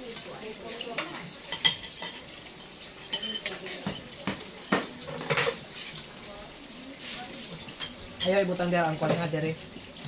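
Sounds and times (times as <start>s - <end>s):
tableware clattering: 1.0s - 2.4s, 3.0s - 6.0s, 7.7s - 9.4s.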